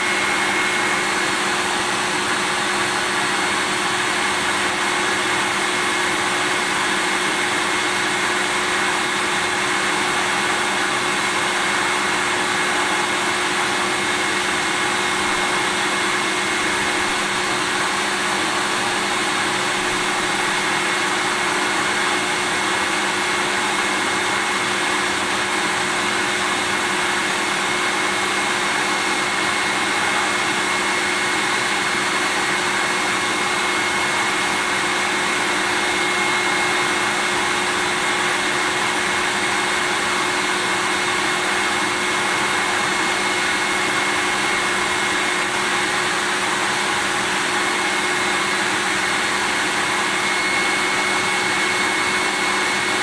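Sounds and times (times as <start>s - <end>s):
vacuum cleaner running: 0.0s - 53.0s.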